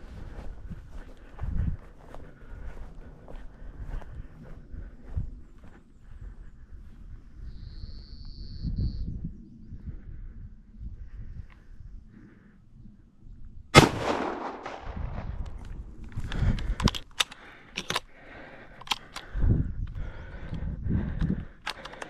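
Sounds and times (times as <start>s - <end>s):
shotgun shot with echo: 13.8s - 15.4s
sharp clicks: 13.8s - 22.0s.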